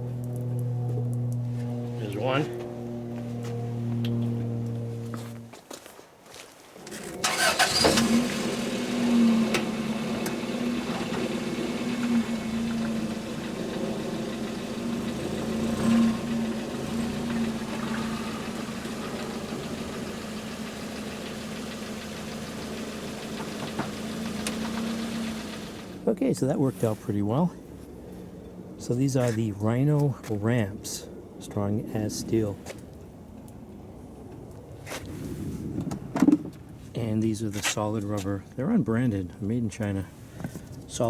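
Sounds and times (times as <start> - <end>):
car engine cranking: 0.0 - 5.5, 6.8 - 26.0
car engine idling: 0.0 - 5.5, 7.1 - 26.0.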